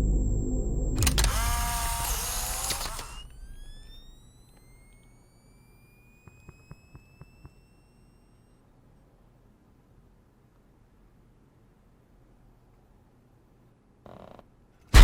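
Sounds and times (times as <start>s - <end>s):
loud noisy hit: 0.0s - 3.6s
thin rising whine: 0.0s - 8.6s.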